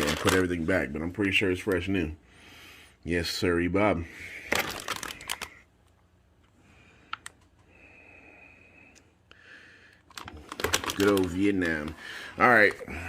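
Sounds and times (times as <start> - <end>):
plastic clicks and rattles: 10.0 - 12.0.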